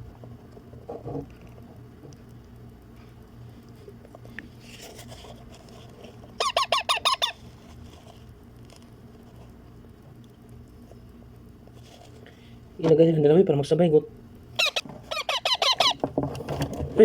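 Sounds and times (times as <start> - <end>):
parakeet chicks squeaky begging calls: 6.4 - 7.4, 14.6 - 16.0.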